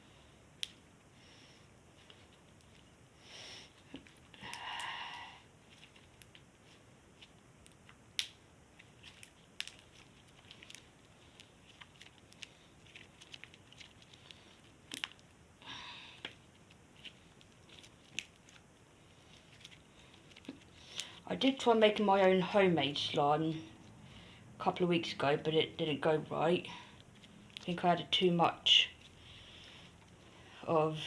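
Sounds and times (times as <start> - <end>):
crunchy slime crackling: 5.7 - 15.5, 16.2 - 22.5.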